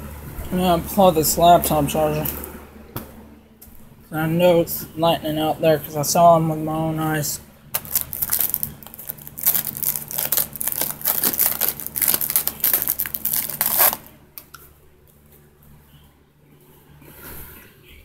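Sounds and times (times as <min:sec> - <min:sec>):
dense crinkling and rustling: 0:07.7 - 0:14.6.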